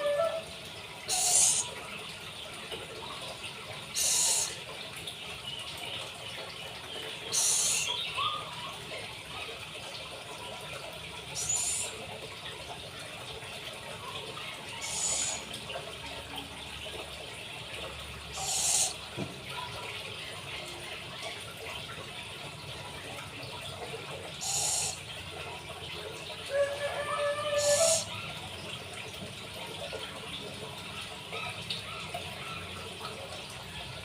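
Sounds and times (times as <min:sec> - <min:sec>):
owl hissing: 0:01.1 - 0:01.7, 0:04.0 - 0:04.6, 0:07.3 - 0:07.9, 0:11.4 - 0:12.0, 0:14.8 - 0:15.4, 0:18.4 - 0:19.0, 0:24.4 - 0:25.0, 0:27.6 - 0:28.1.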